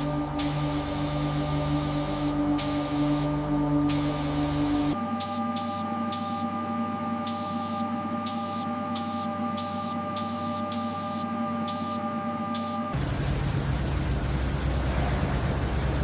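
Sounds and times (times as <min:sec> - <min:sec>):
spray hissing in bursts: 0:00.0 - 0:06.4, 0:12.6 - 0:16.0
spray painting equipment humming: 0:00.0 - 0:16.0.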